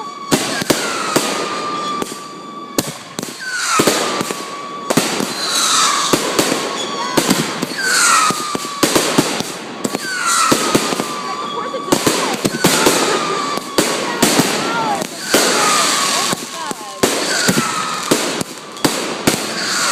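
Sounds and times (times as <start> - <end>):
firework bangs and crackling: 0.0 - 19.9
firework whistles gliding down: 0.0 - 19.9.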